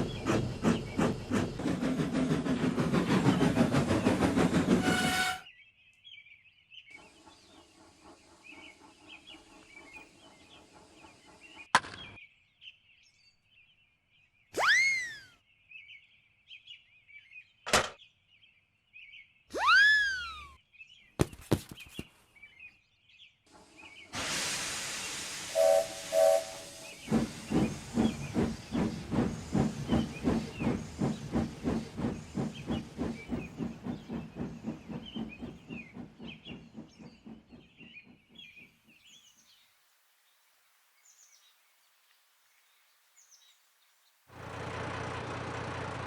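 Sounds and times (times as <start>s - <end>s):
steam locomotive chuffing: 0.0s - 5.4s, 7.0s - 11.7s, 23.5s - 39.0s, 44.4s - 46.0s
steam whistle toots: 4.8s - 5.5s, 25.4s - 27.0s
steam hissing: 23.8s - 37.2s.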